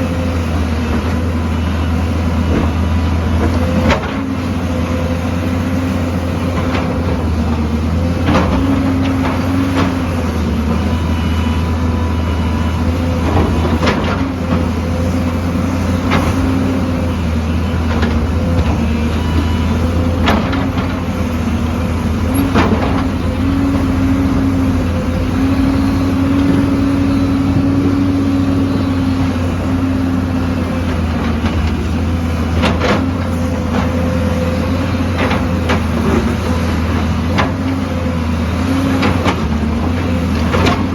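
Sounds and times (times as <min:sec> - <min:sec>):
diesel engine running: 0:00.0 - 0:40.9.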